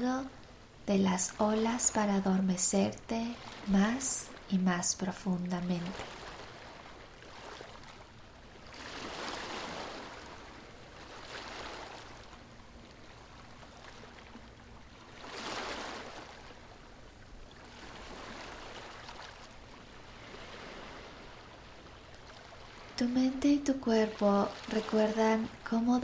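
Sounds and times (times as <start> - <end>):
ocean waves washing ashore: 0.0 - 26.0.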